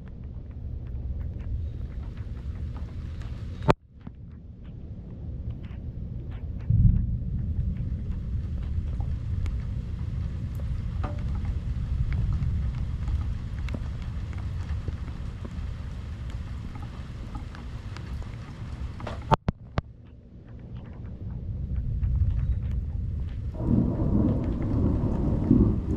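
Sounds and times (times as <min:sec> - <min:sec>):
thunder rumble: 0:00.0 - 0:19.8, 0:21.2 - 0:25.9
raindrop ticks: 0:00.0 - 0:25.9
sharp thunder cracks: 0:23.6 - 0:25.9.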